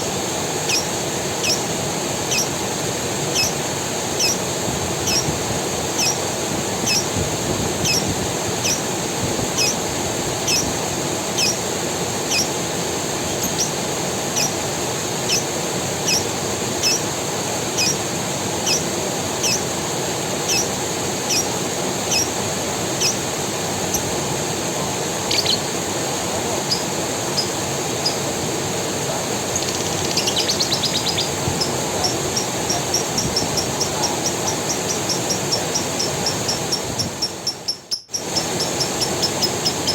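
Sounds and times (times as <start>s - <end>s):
creek water running: 0.0s - 39.9s
bird chirping: 0.6s - 1.7s, 2.3s - 2.5s, 3.3s - 3.6s, 4.2s - 4.4s, 5.1s - 5.3s, 6.0s - 6.2s, 6.8s - 7.1s, 7.8s - 8.8s, 9.6s - 9.8s, 10.4s - 10.7s, 11.4s - 11.6s, 12.3s - 12.5s, 13.3s - 13.8s, 15.3s - 15.5s, 16.1s - 17.0s, 17.8s - 18.0s, 18.6s - 18.8s, 19.4s - 19.6s, 20.5s - 20.7s, 21.3s - 21.5s, 22.1s - 22.3s, 23.0s - 23.2s, 25.3s - 25.7s, 29.5s - 39.9s
bird trill: 0.6s - 1.7s, 2.3s - 2.6s, 3.3s - 3.6s, 4.2s - 4.4s, 5.1s - 5.3s, 6.0s - 6.2s, 6.8s - 7.1s, 7.8s - 8.9s, 9.6s - 9.8s, 10.4s - 10.7s, 11.4s - 11.6s, 12.3s - 12.6s, 13.3s - 13.8s, 14.4s - 14.6s, 15.3s - 17.1s, 17.8s - 18.0s, 18.6s - 18.8s, 19.4s - 19.7s, 20.5s - 20.7s, 21.3s - 21.5s, 22.1s - 22.3s, 23.0s - 23.2s, 25.3s - 25.7s, 26.7s - 28.2s, 29.5s - 39.9s.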